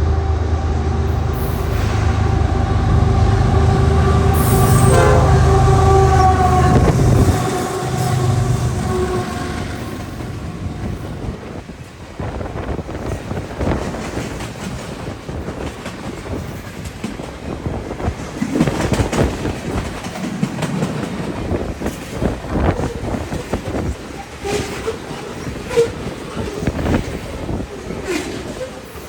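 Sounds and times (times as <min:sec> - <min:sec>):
train wheels clacking on rail joints: 0:06.5 - 0:29.0.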